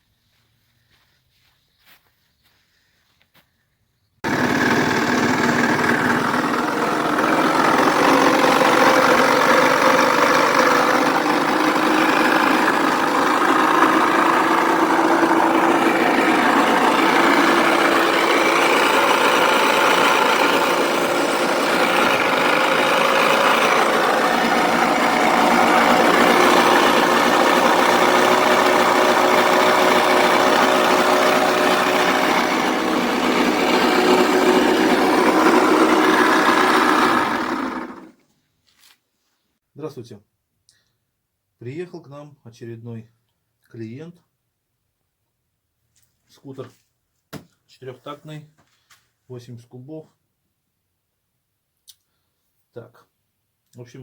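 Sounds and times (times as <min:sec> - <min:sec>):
scooter engine running: 0:04.2 - 0:38.2.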